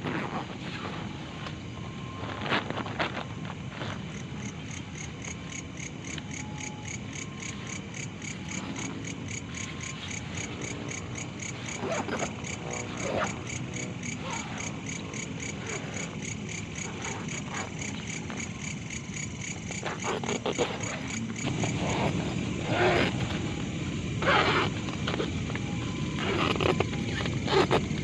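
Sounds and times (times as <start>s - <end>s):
crickets chirping: 0.0s - 28.0s.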